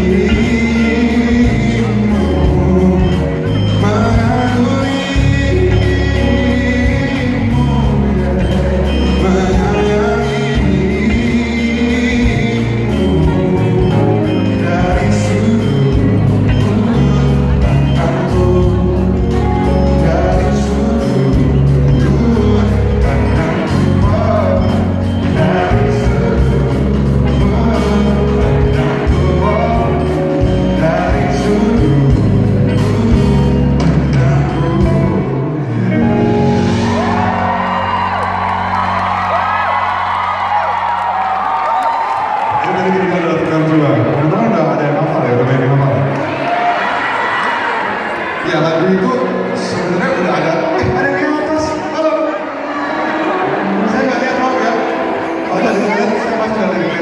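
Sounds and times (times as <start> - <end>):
man singing: 0.0 - 37.1
band playing pop ballad: 0.0 - 57.0.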